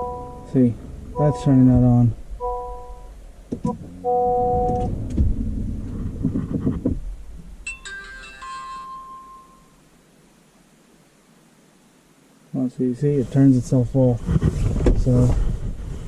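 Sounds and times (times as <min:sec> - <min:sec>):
electronic chime tones: 0:00.0 - 0:00.6, 0:01.2 - 0:01.7, 0:02.4 - 0:03.1, 0:04.0 - 0:04.9, 0:07.7 - 0:09.8.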